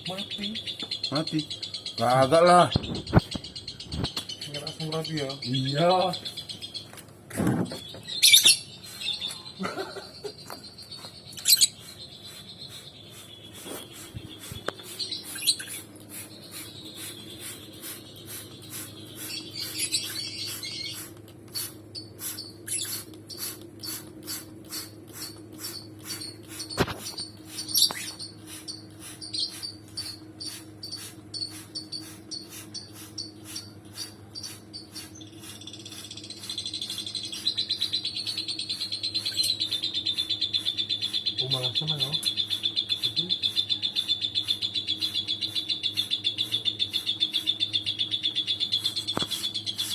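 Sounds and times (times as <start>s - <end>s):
lovebirds chirping and chattering: 0.0s - 49.9s.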